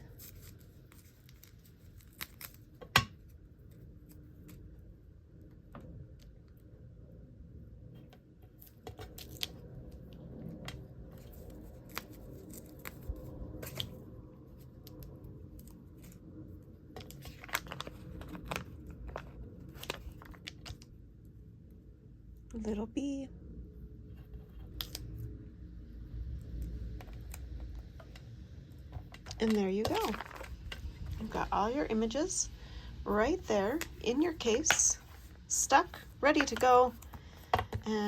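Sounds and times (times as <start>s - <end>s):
plastic sheets clicking and rustling: 29.0s - 31.2s.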